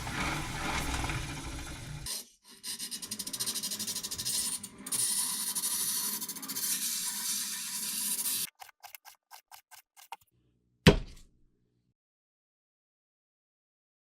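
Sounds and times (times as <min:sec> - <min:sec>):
knife rasping on grinding wheel: 0:00.0 - 0:10.2.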